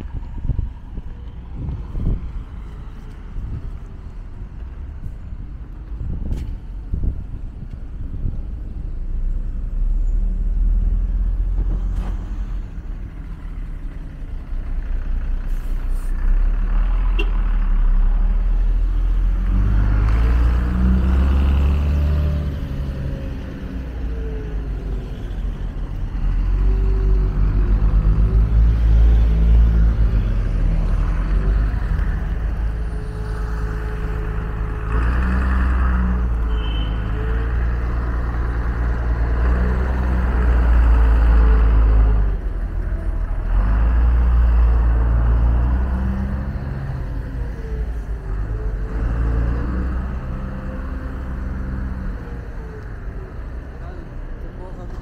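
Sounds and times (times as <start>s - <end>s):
vehicles passing: 0.0s - 55.0s.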